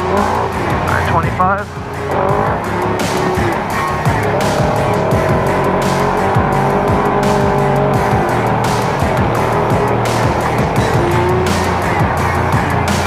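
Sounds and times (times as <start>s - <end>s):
engine running at steady speed: 0.0s - 13.0s.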